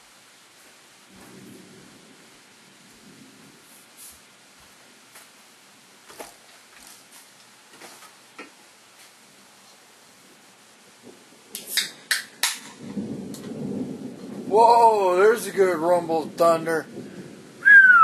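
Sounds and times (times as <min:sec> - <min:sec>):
rumble of thunder: 0:01.1 - 0:03.8, 0:12.5 - 0:18.0
faint hiss with small clicks: 0:02.2 - 0:14.5
loud sharp cracks: 0:11.5 - 0:13.6.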